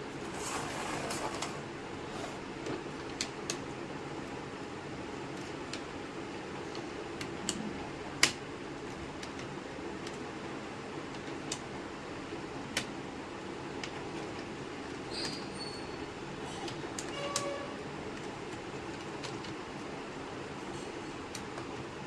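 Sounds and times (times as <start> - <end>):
fan-like hum: 0.0 - 22.0.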